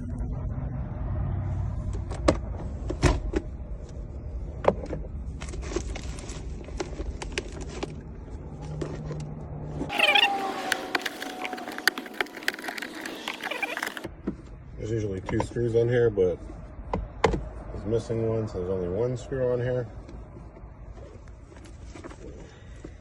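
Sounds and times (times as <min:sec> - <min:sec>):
low background rumble: 0:00.0 - 0:10.2.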